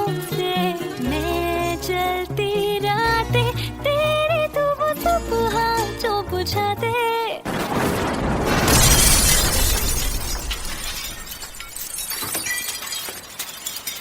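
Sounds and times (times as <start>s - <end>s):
falling glass pieces clicking: 7.5s - 14.0s
glass shattering: 7.5s - 14.0s.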